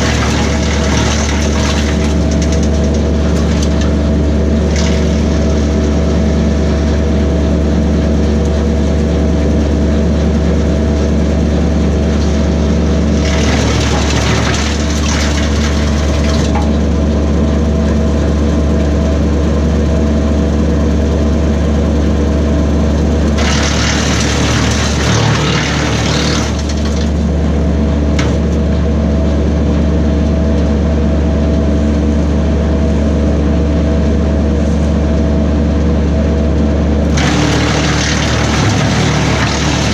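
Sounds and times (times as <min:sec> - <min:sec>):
wood chipper chipping branch: 0:00.0 - 0:19.0, 0:22.2 - 0:29.6, 0:37.0 - 0:39.9
tractor diesel engine running: 0:00.0 - 0:39.9.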